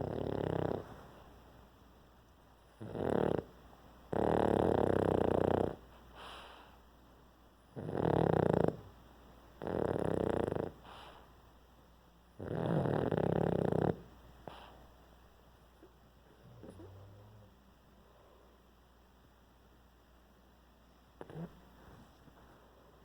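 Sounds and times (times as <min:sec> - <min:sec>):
dog snoring: 0:00.0 - 0:01.3, 0:02.7 - 0:06.8, 0:07.7 - 0:11.3, 0:12.3 - 0:14.8, 0:16.3 - 0:17.6, 0:21.2 - 0:22.2.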